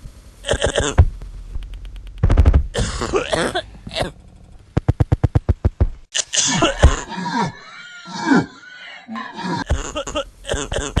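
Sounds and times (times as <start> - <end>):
rapid clicking pulses: 0.0 - 6.1
person coughing harshly: 2.8 - 4.2, 6.2 - 11.0.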